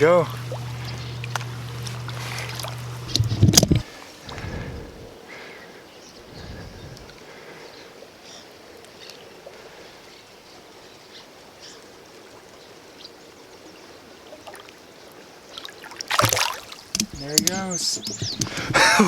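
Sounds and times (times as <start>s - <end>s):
faint small splashes: 0.0s - 5.2s, 14.2s - 19.0s
river water running: 0.0s - 19.0s.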